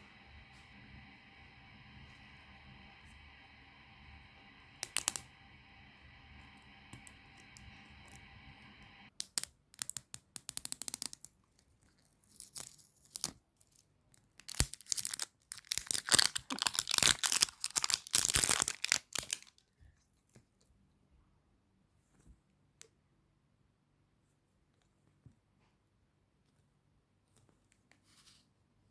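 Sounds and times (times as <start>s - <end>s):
plastic packaging tearing and crinkling: 14.4s - 19.6s.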